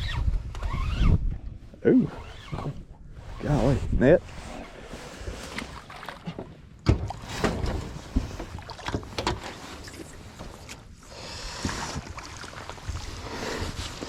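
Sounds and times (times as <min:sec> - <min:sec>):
knocks and bumps on boat: 0:05.6 - 0:10.7.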